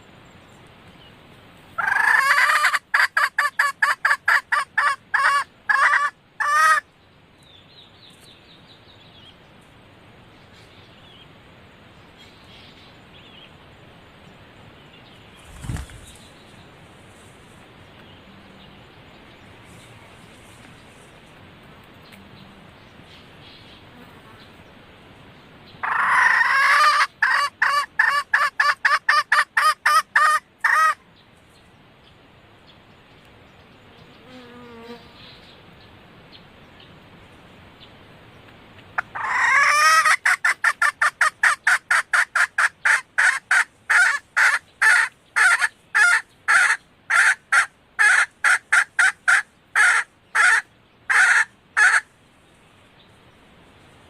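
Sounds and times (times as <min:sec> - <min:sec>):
hen clucking rapidly: 0:01.8 - 0:06.8, 0:25.8 - 0:31.0, 0:39.0 - 0:52.0.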